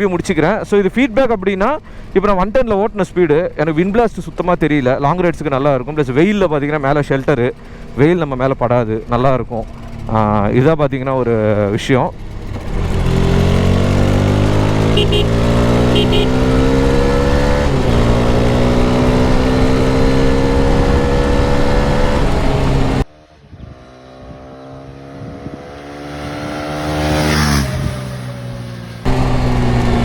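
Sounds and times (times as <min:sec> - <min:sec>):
motorcycle engine accelerating: 0:04.2 - 0:30.0
wind noise: 0:17.2 - 0:28.2.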